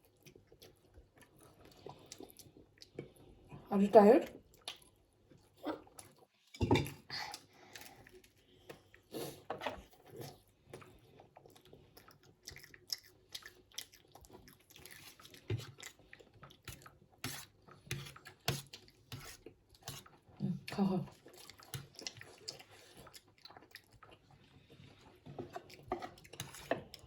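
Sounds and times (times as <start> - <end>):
chewing and mouth sounds: 4.4 - 6.4, 7.0 - 27.0
cutlery clinking on dishes: 6.6 - 7.0.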